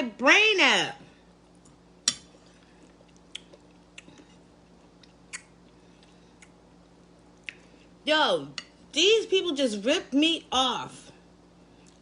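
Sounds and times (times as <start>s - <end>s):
wet eating clicks and smacks: 1.6s - 6.6s, 7.4s - 7.7s.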